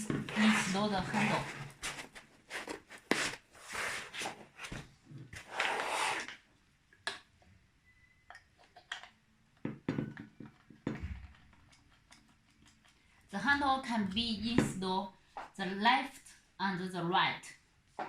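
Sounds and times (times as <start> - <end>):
rubbing or scraping: 0.0 - 6.3.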